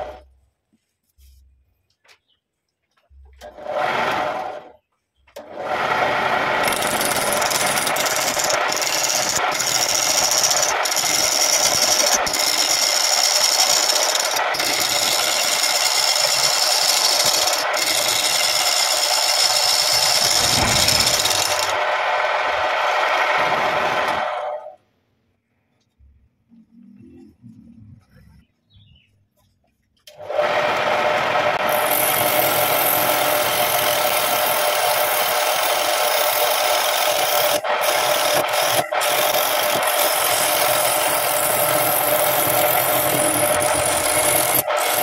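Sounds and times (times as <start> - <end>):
wood lathe turning wood: 5.4 - 24.8, 30.1 - 45.0.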